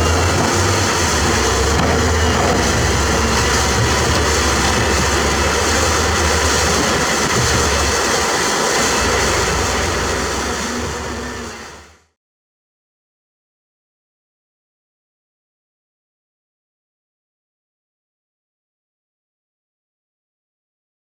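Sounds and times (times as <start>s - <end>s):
diesel machinery engine rumble: 0.0s - 12.0s.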